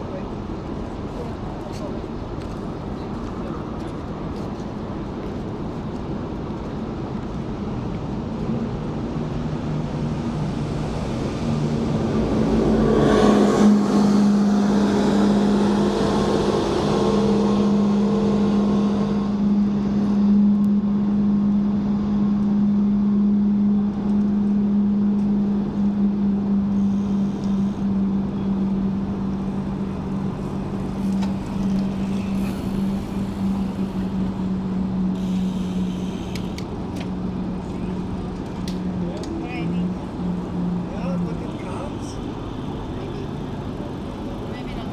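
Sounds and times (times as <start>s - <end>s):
low engine drone: 0.0s - 44.9s
vehicle passing: 10.6s - 19.4s, 26.7s - 36.3s.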